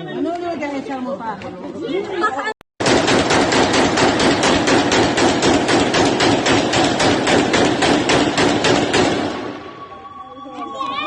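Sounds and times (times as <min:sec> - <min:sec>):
rapid automatic gunshots: 0:02.8 - 0:09.6.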